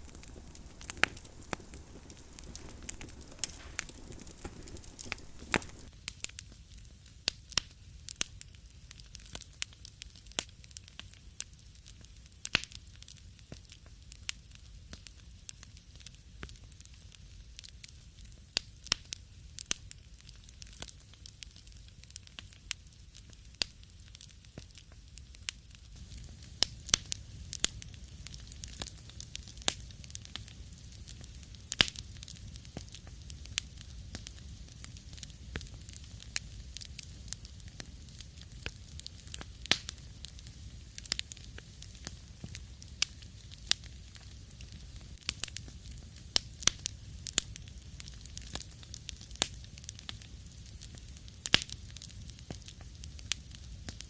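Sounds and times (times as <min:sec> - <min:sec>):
low rumble of flames: 0:00.0 - 0:05.9, 0:25.9 - 0:54.0
wood fire crackling and popping: 0:00.0 - 0:54.0.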